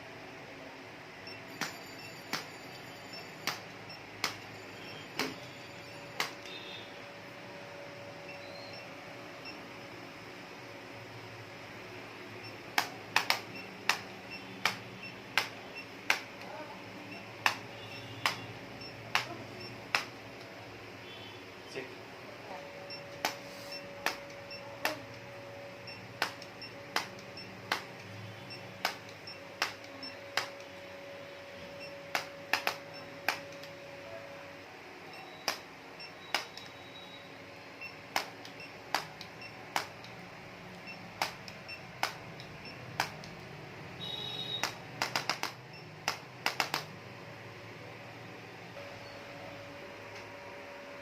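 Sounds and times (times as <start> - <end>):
sharp clicks: 3.4 - 4.5, 6.2 - 6.6, 12.7 - 18.5, 19.1 - 20.5, 22.9 - 25.3, 25.9 - 30.7, 31.8 - 33.8, 35.4 - 36.8, 38.1 - 47.0.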